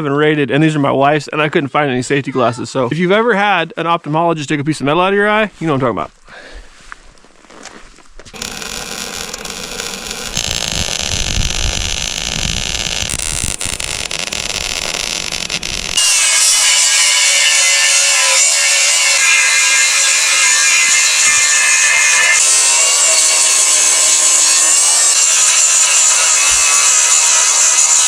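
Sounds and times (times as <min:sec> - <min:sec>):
power grinder grinding steel: 0:08.3 - 0:28.0.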